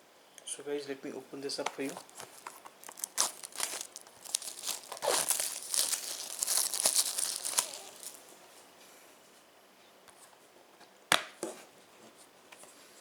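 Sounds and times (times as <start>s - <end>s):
plastic wrapping crinkling and tearing: 1.8s - 8.2s.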